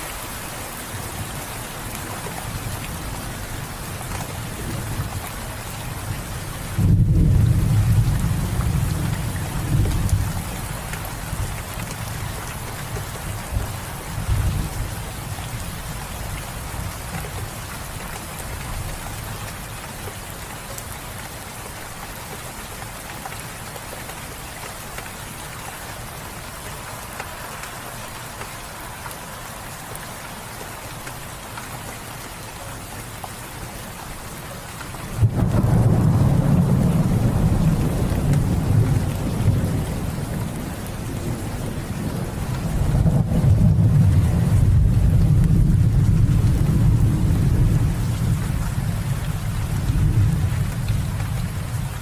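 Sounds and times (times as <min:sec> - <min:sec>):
steady rain falling: 0:00.0 - 0:52.0
thunder rumbling: 0:06.7 - 0:10.5, 0:35.2 - 0:52.0.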